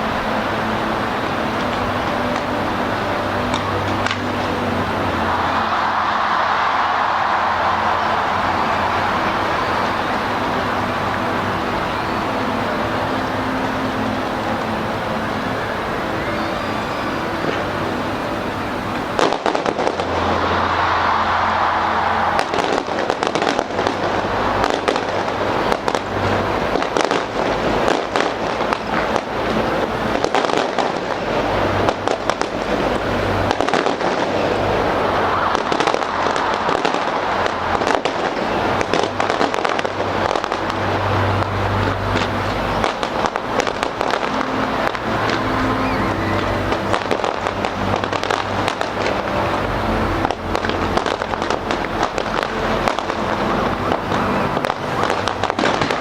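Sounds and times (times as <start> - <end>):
fireworks bangs and crackling: 18.9 - 56.0.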